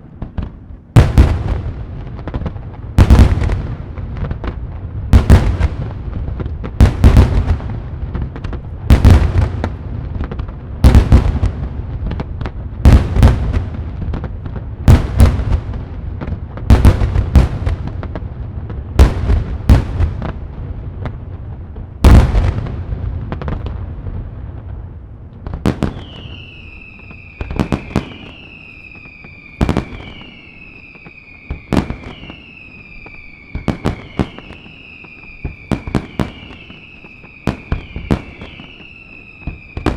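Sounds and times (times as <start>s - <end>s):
falling firework whistle: 25.6s - 39.9s.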